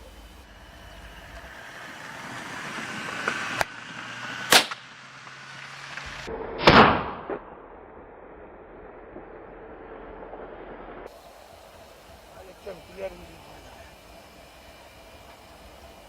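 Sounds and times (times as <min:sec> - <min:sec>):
gunshot echo: 0:04.5 - 0:04.9, 0:06.3 - 0:09.7
gunshots: 0:04.5 - 0:04.9, 0:06.5 - 0:10.4.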